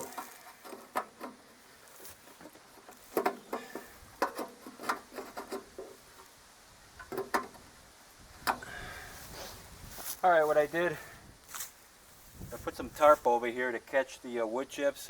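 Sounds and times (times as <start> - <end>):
light clicks and knocks from handling: 0.0 - 6.3
quiet hiss: 0.0 - 15.0.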